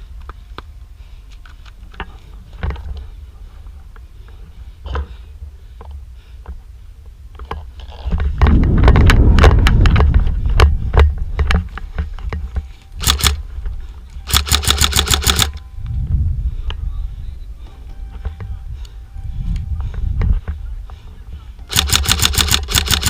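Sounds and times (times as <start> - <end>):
airsoft rifle shots: 13.0 - 13.4, 14.3 - 15.6, 21.7 - 23.0
camera handling noise: 13.0 - 13.4, 14.2 - 15.6
gear clicking: 13.0 - 13.4, 14.3 - 15.6, 21.7 - 23.0
rapid airsoft rifle burst: 13.0 - 13.4, 14.2 - 15.6, 21.7 - 23.0.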